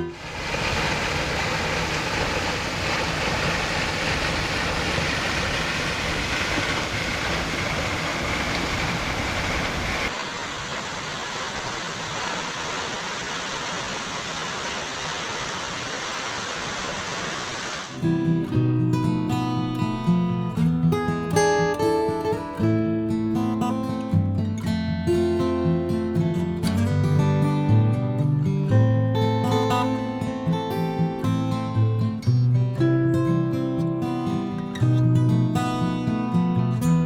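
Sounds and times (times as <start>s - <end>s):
waterfall rushing: 0.0s - 18.5s.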